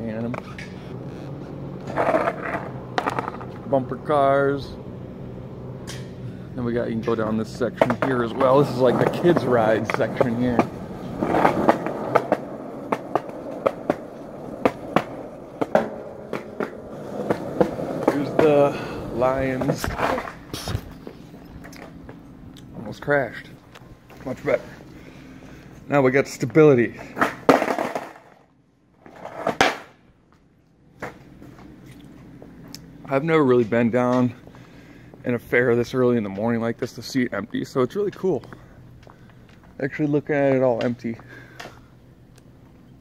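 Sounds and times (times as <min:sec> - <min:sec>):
skateboard rolling on pavement: 0:00.0 - 0:30.1, 0:30.9 - 0:41.8
skateboard clacks: 0:01.8 - 0:03.6, 0:07.4 - 0:21.1, 0:27.0 - 0:28.4, 0:29.1 - 0:29.9.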